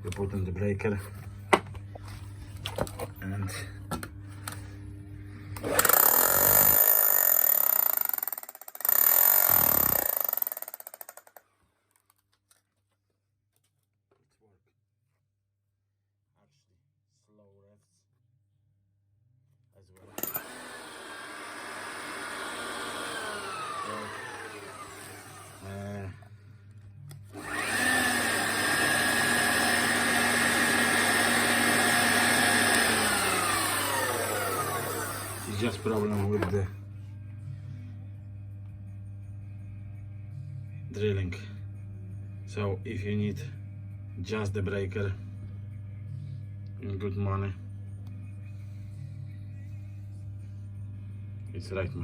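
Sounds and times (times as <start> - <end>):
hammer drill motor whining: 5.6 - 11.4, 20.0 - 26.3, 27.3 - 36.6.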